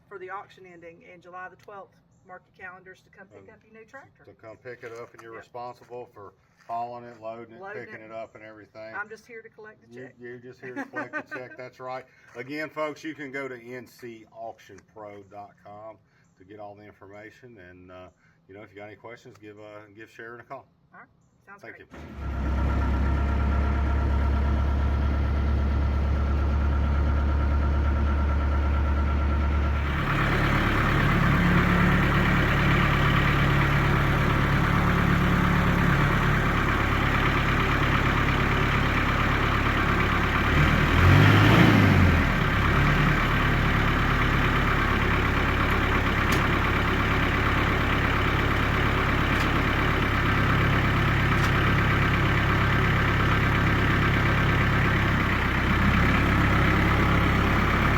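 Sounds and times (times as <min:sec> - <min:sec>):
vehicle engine running: 0:22.0 - 0:57.9.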